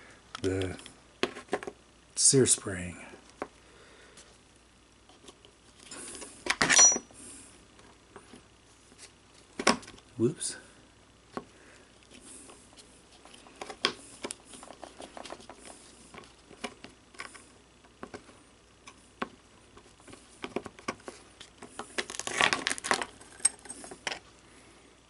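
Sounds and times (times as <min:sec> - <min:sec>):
metal parts clicking and scraping: 0:06.5 - 0:07.1, 0:22.1 - 0:24.2.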